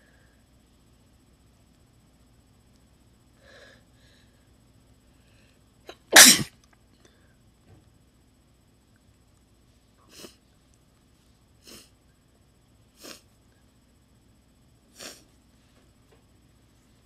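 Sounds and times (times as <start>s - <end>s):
stifled sneezes: 5.9s - 6.5s.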